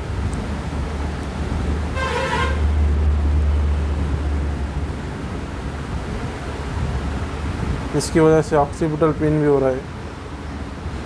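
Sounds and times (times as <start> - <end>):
vehicle horn toot: 1.9 - 2.7.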